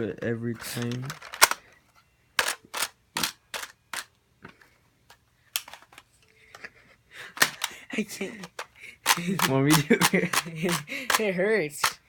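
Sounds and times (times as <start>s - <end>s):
toy gun plastic clicks: 0.8s - 1.6s, 2.4s - 4.1s, 8.4s - 12.0s.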